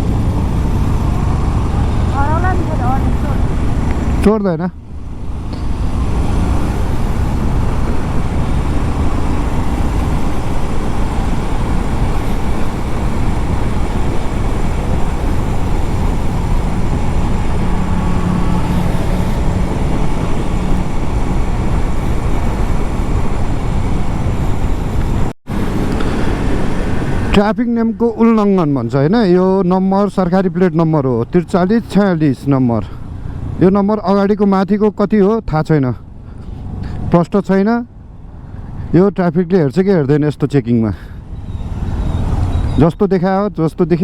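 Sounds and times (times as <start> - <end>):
motorcycle engine running: 0.0 - 27.3
road and wind noise: 0.0 - 44.0.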